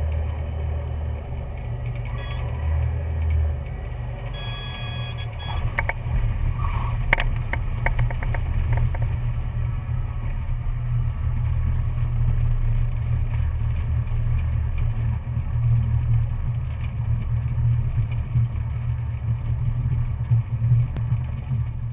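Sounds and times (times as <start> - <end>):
propeller plane engine droning: 0.0 - 21.9
brief clicks and rattles: 5.5 - 9.2.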